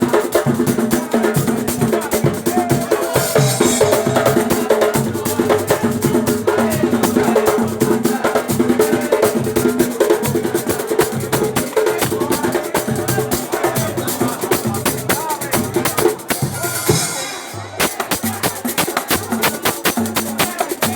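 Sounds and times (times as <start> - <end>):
percussion beat: 0.0 - 20.9
low repeating tone: 3.1 - 5.5.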